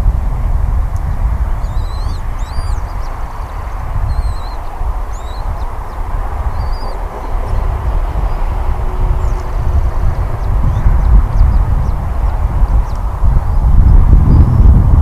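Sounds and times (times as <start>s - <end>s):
wind buffeting microphone: 0.0s - 15.0s
high bird chirps: 1.6s - 8.6s.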